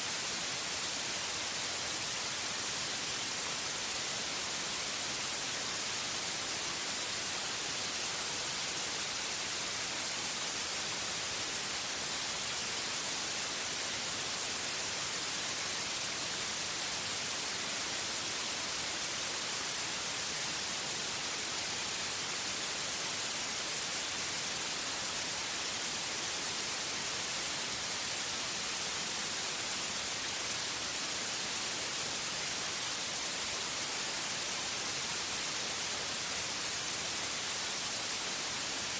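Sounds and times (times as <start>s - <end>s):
white noise hiss: 0.0s - 38.9s.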